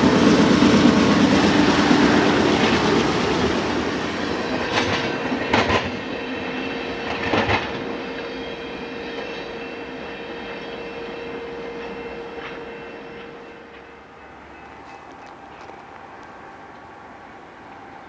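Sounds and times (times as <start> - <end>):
train rolling on rails: 0.0 - 18.0
wheels clacking over rail joints: 0.6 - 8.4
thin ringing tone from wheels: 4.1 - 18.0.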